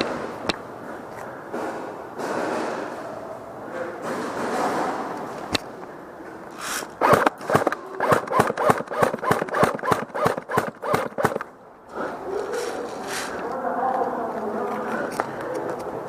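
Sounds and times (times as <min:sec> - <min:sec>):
airsoft gun rapid shots: 0:07.0 - 0:11.5.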